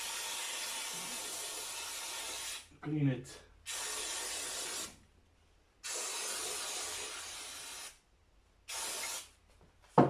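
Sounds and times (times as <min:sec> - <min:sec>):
aerosol spray hissing: 0:05.8 - 0:08.0, 0:08.7 - 0:09.3.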